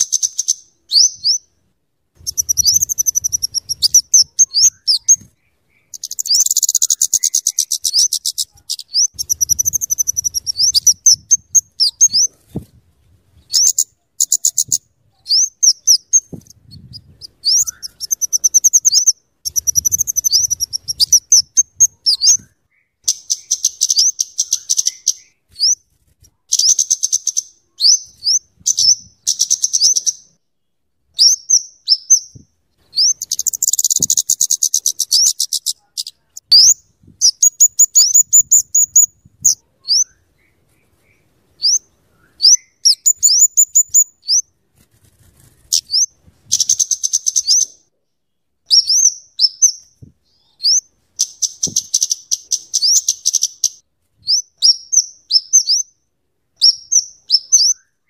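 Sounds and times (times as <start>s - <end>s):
bird ticking chatter: 2.2s - 5.2s, 5.8s - 12.2s, 13.6s - 14.8s, 17.2s - 21.9s, 33.0s - 39.6s, 42.6s - 44.1s.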